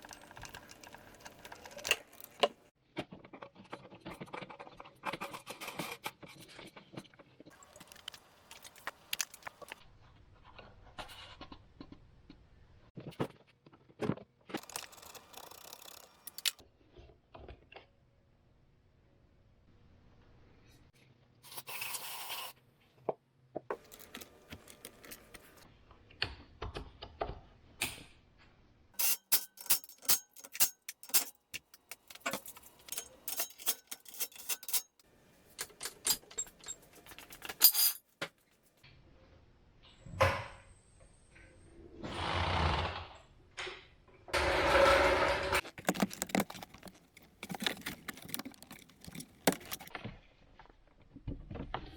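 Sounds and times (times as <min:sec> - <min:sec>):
metal tools clinking: 0:29.0 - 0:35.0, 0:35.6 - 0:38.0, 0:45.6 - 0:49.9.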